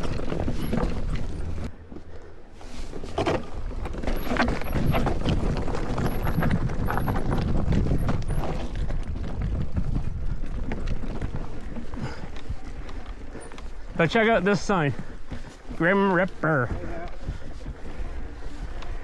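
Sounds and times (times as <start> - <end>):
bike rumbling and rattling: 0.0 - 19.0
tyres crunching on dirt: 0.0 - 19.0.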